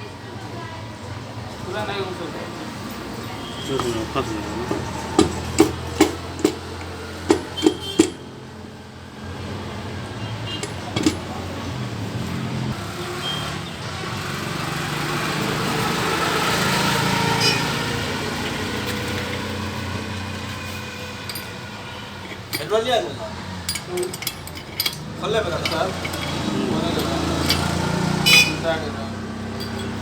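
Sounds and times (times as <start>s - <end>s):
passing vehicle engine: 1.8s - 30.0s
sharp metal clinks: 23.6s - 28.7s, 29.6s - 30.0s.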